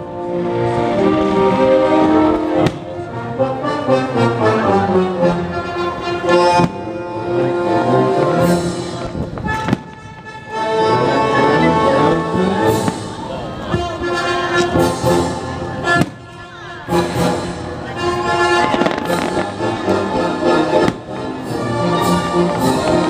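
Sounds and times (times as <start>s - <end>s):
symphony orchestra with brass: 0.0s - 23.0s
firework bangs: 2.2s - 3.0s, 8.5s - 10.4s, 12.7s - 14.1s, 15.8s - 16.5s, 18.3s - 21.4s.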